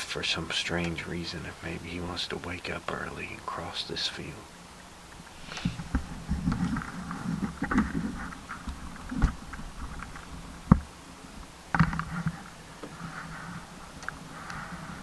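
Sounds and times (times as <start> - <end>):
people rustling and shuffling: 11.8 - 15.0.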